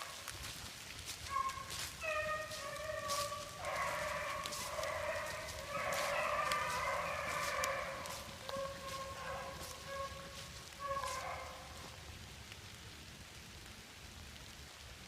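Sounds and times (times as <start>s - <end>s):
hounds baying: 1.1s - 12.0s.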